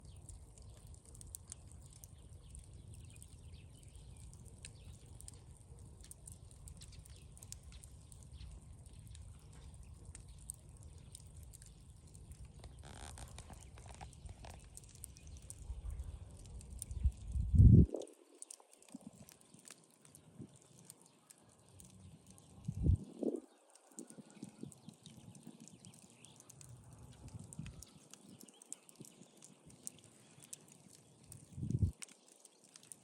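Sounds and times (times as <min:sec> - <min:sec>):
campfire crackling and popping: 0:00.0 - 0:33.0
steady low rumble: 0:16.9 - 0:18.0, 0:31.6 - 0:31.9.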